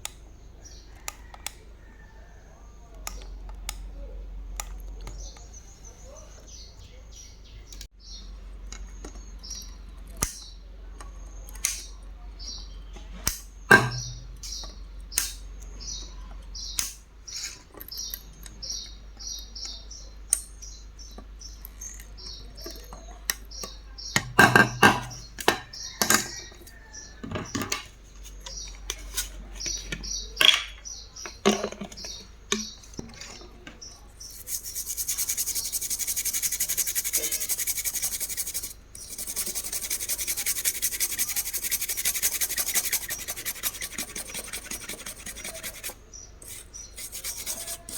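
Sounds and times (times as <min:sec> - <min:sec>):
small bird chirping: 0:00.0 - 0:47.9
steady rubbing noise: 0:34.2 - 0:47.9.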